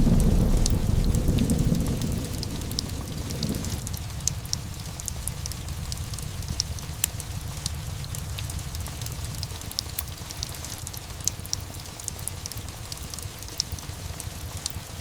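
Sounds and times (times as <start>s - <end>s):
low rumble: 0.0s - 6.5s
steady rain: 0.0s - 15.0s
wood fire crackling and popping: 0.0s - 15.0s.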